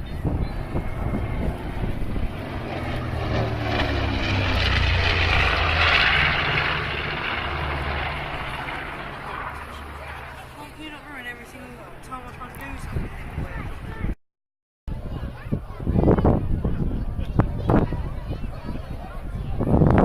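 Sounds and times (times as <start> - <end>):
propeller aircraft flying past: 0.0 - 14.2.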